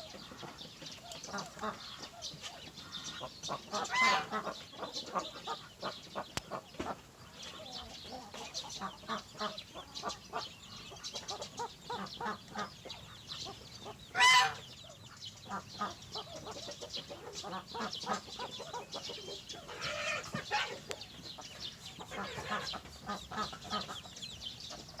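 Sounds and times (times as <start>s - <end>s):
chickens clucking: 0.0s - 25.0s
chicken squawk: 3.2s - 5.6s, 13.5s - 14.7s, 15.5s - 21.0s, 22.0s - 24.1s.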